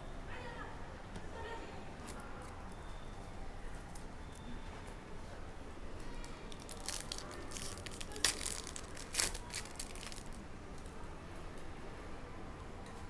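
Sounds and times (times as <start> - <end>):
foil wrapper crinkling: 6.3 - 10.4.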